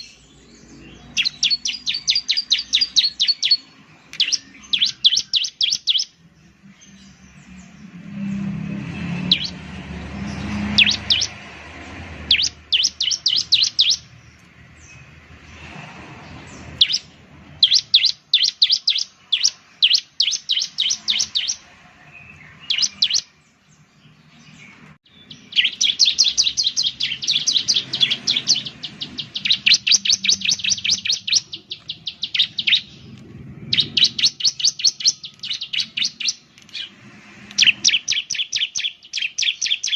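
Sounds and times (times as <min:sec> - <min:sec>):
bird chirping in rapid trains: 0:00.0 - 0:39.9
low rumble: 0:28.6 - 0:34.4.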